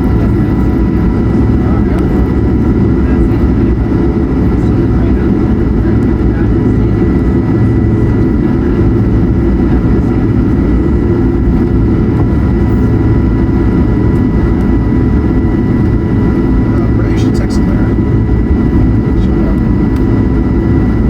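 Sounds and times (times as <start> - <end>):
jet engines rumbling in cabin: 0.0 - 21.0
thin steady engine whine: 0.0 - 21.0.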